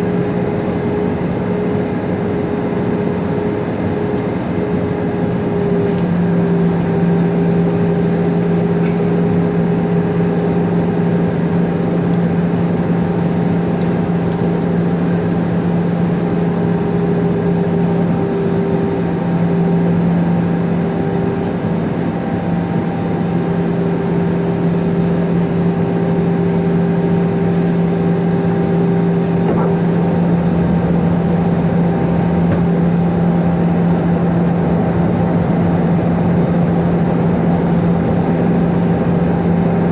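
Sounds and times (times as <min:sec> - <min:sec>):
jet engines humming: 0:00.0 - 0:39.9.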